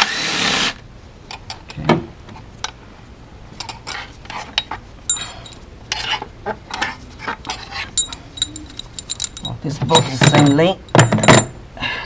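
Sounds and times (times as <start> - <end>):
hand tools clicking and clinking: 4.6 - 5.6, 7.4 - 11.6
metal on metal tink: 5.1 - 5.6, 7.7 - 11.6.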